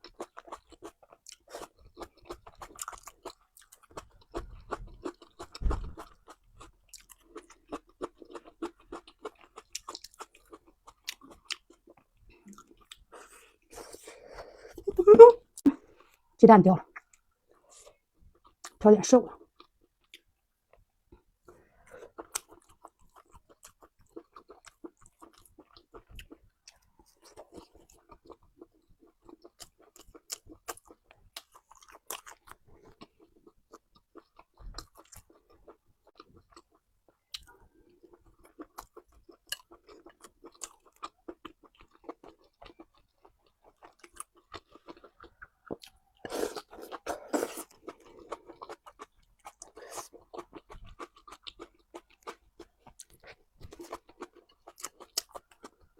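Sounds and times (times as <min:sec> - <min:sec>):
person chewing food: 0:00.0 - 0:16.3, 0:16.9 - 0:55.9.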